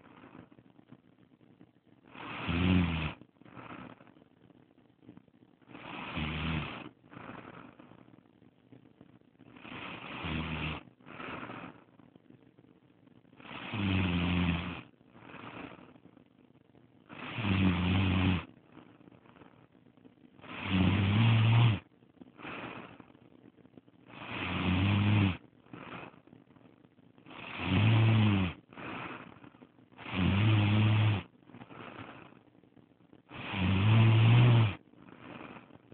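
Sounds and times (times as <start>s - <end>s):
snoring: 0.0s - 0.6s, 2.1s - 4.2s, 5.6s - 8.2s, 9.4s - 12.0s, 13.4s - 16.0s, 17.1s - 19.8s, 20.4s - 23.2s, 24.1s - 26.3s, 27.2s - 32.5s, 33.2s - 35.9s
soft breathing: 0.0s - 35.9s.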